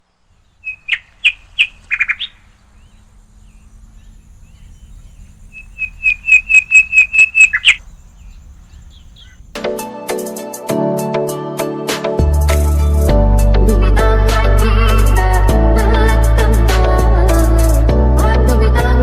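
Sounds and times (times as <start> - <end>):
bird chirping: 0.0 - 9.6.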